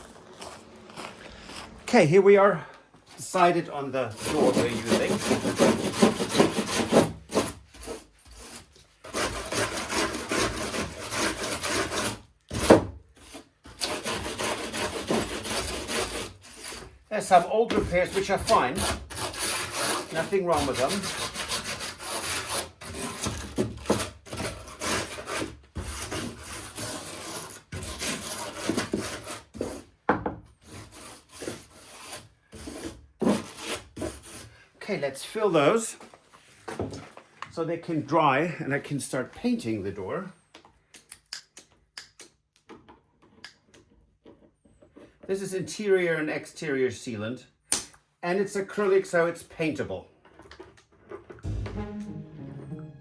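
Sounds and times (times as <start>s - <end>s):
hand tool rasping on wood: 4.0s - 29.9s, 30.6s - 34.5s.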